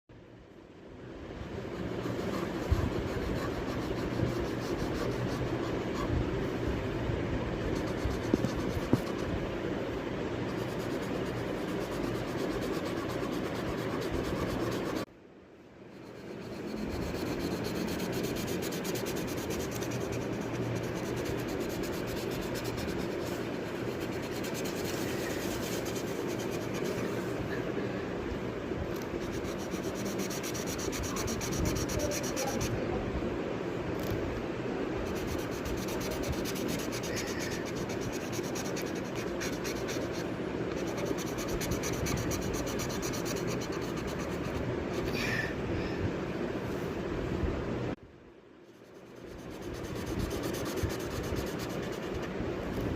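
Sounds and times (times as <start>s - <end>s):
coloring tool scratching paper: 1.7s - 6.4s, 7.6s - 9.4s, 10.5s - 15.1s, 15.9s - 27.4s, 28.9s - 32.8s, 35.0s - 45.1s, 48.8s - 52.3s.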